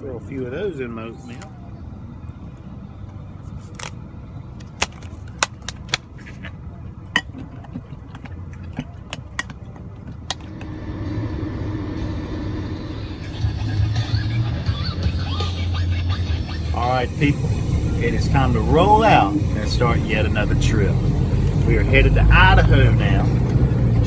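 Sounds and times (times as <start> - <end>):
low hum: 10.3 - 24.0
steady low rumble: 10.3 - 24.0.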